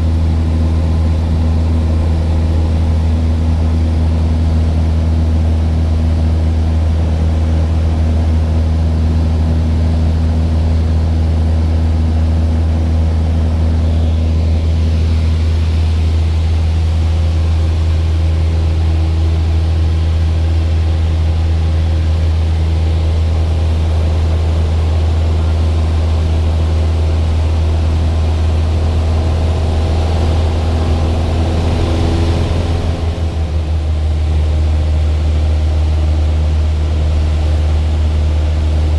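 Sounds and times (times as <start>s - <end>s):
aircraft engine drone: 0.0s - 38.9s.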